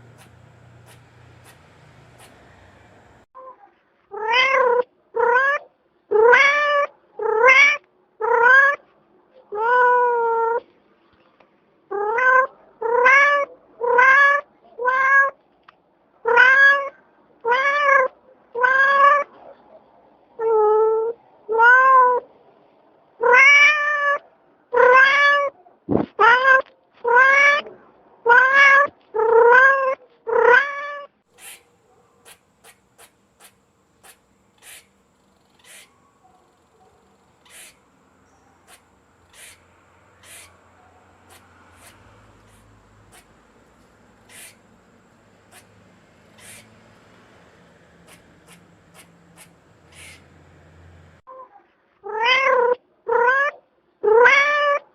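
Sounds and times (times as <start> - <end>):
cat meowing: 4.1 - 8.8, 11.9 - 15.4, 16.2 - 19.3, 23.2 - 25.6, 26.2 - 31.6, 52.0 - 54.9.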